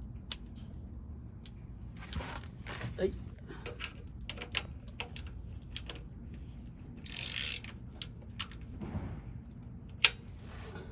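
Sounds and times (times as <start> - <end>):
ratchet wrench clicking: 3.7 - 6.1, 7.0 - 8.6.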